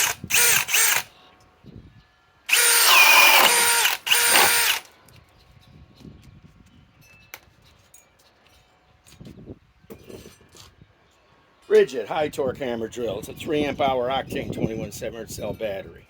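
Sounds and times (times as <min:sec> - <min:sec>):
cordless drill whining: 0:00.0 - 0:01.1, 0:02.5 - 0:04.9
drill bit biting into wood: 0:00.0 - 0:01.1, 0:02.5 - 0:04.9.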